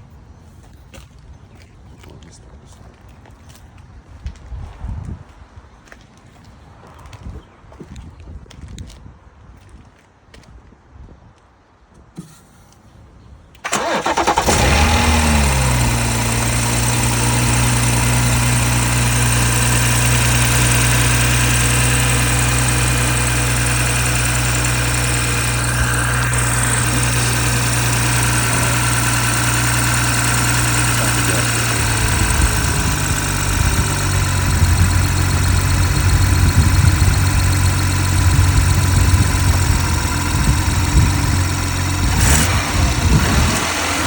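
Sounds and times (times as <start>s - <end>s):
car engine starting and idling: 13.6s - 44.0s.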